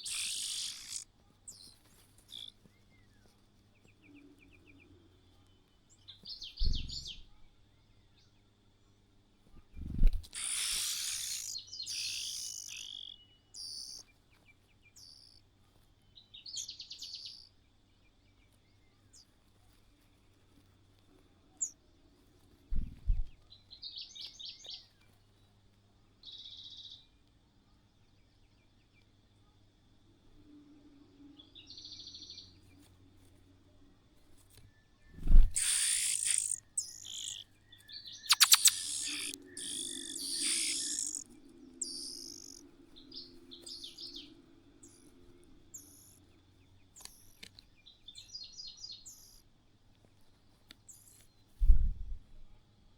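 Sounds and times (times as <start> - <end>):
birds chirping: 0.0 - 8.6, 9.8 - 20.9, 21.5 - 25.2, 34.6 - 49.5.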